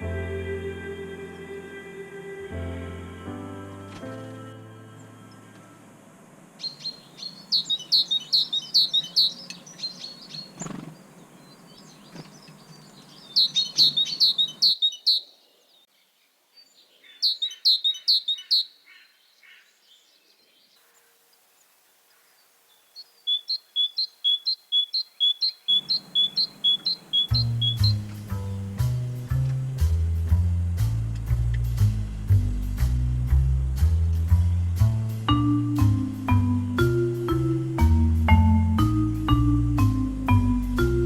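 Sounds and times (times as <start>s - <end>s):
two-note bird song: 0.0s - 6.0s, 25.2s - 30.0s, 35.2s - 41.0s
songbirds chirping: 0.0s - 41.0s.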